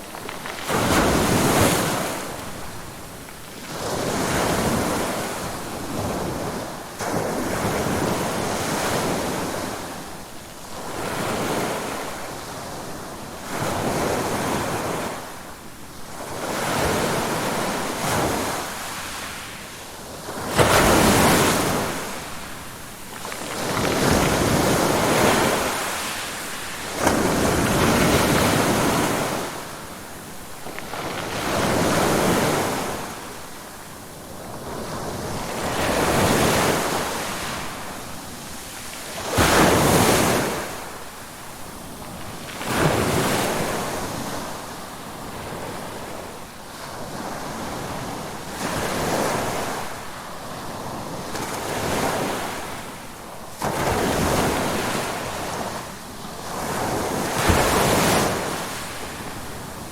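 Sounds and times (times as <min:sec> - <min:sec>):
ocean waves breaking on shore: 0:00.0 - 0:59.9.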